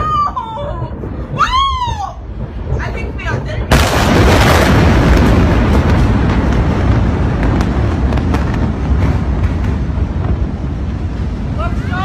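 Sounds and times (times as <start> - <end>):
explosion roar and rumble: 0.0 - 12.0
sharp cracks: 3.7 - 11.0.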